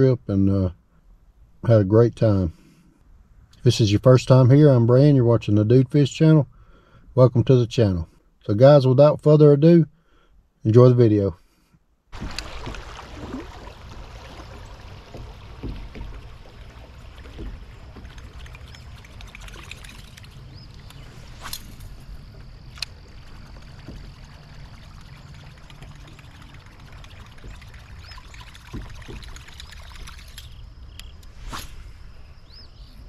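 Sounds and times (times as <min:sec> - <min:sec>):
water lapping around hull: 0:11.5 - 0:30.6
light knocks on kayak: 0:15.1 - 0:16.6, 0:17.2 - 0:18.1.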